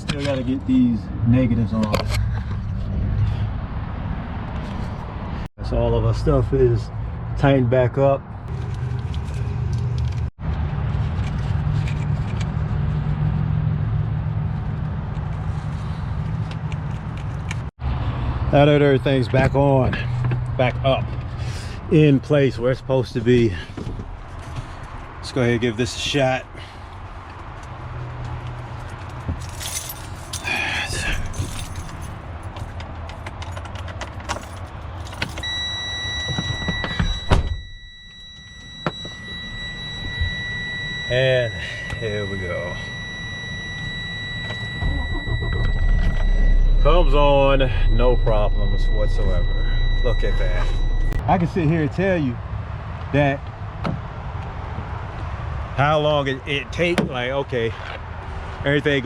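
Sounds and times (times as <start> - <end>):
keys jangling: 29.4 - 32.7, 33.3 - 35.4
high electronic warning tone: 35.4 - 51.2.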